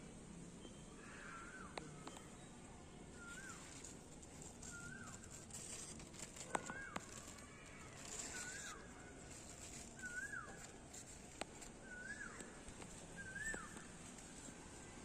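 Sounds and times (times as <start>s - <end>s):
faint high chirping: 0.5s - 15.0s
bird call rising and falling: 11.7s - 13.9s.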